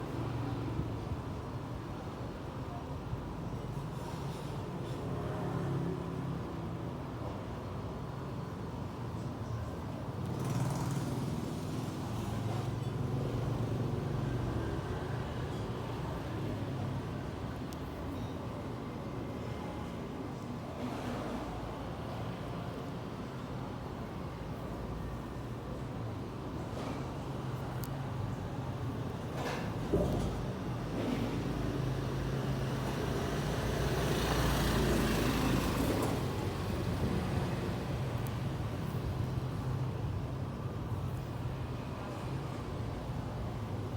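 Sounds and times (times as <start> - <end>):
road traffic rumble: 10.2 - 43.9.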